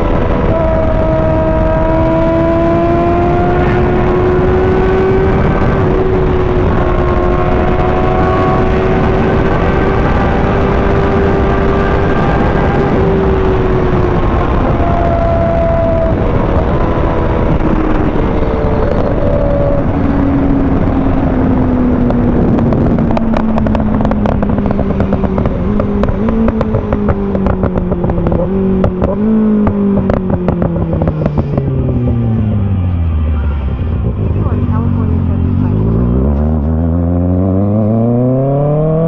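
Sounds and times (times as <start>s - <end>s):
low rushing noise: 0.0s - 39.0s
motorcycle engine revs: 0.0s - 39.0s
exhaust crackling pops: 3.5s - 32.3s.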